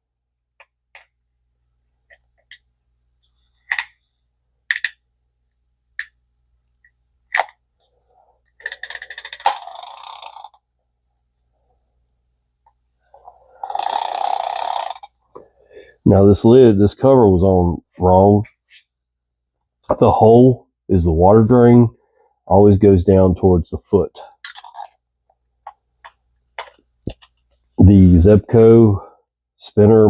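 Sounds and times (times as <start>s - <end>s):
fishing reel ratcheting: 8.6s - 10.6s, 13.6s - 15.1s
fishing reel clicks: 13.6s - 15.1s.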